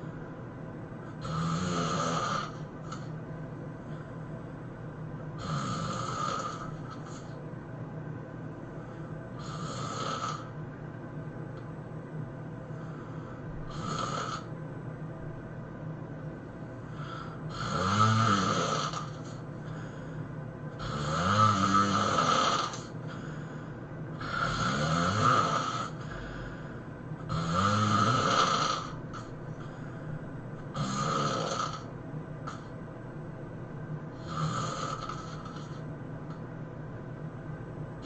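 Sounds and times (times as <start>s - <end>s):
low hum: 0.0s - 1.3s, 2.5s - 5.8s, 6.5s - 9.6s, 10.4s - 13.8s, 14.4s - 17.6s, 25.8s - 27.3s, 28.8s - 30.8s, 31.8s - 34.2s, 35.1s - 38.0s
person snoring loudly: 1.1s - 3.1s, 5.4s - 7.4s, 9.4s - 10.6s, 13.6s - 14.5s, 16.9s - 19.8s, 20.8s - 23.3s, 24.2s - 26.5s, 27.3s - 29.3s, 30.7s - 32.7s, 34.1s - 35.8s.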